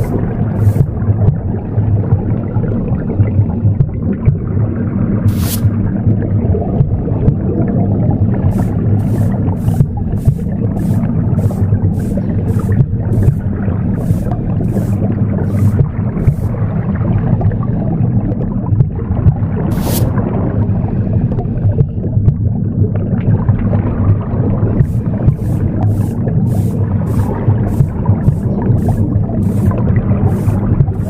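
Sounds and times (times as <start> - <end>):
broom sweeping: 0.0 - 1.0, 5.3 - 5.8, 8.5 - 16.6, 19.7 - 20.2, 24.8 - 31.0
low whooshing rumble: 0.0 - 31.0.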